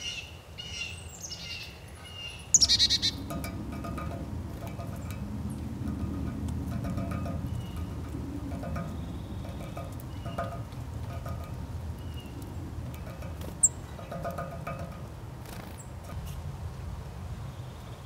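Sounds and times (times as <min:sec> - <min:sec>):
high-pitched bird chirp: 0:00.0 - 0:03.2
low outdoor rumble: 0:01.0 - 0:18.0.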